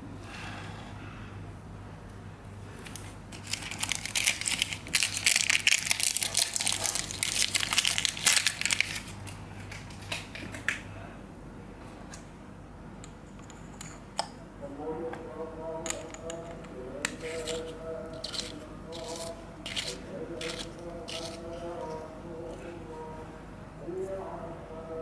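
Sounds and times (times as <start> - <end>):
plastic packaging crinkling: 2.8 - 10.6, 17.2 - 22.0.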